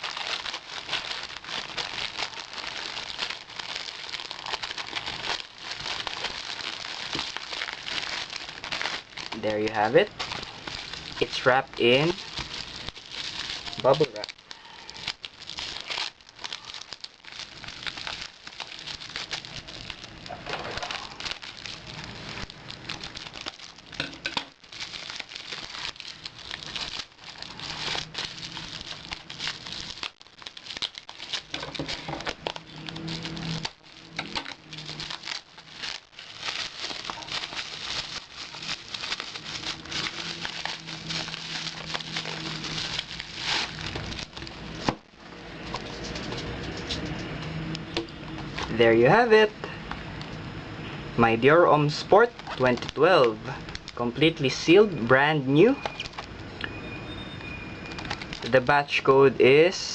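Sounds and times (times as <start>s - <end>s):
bubble wrap crinkling: 0.0s - 49.5s, 51.3s - 56.4s, 57.8s - 59.9s.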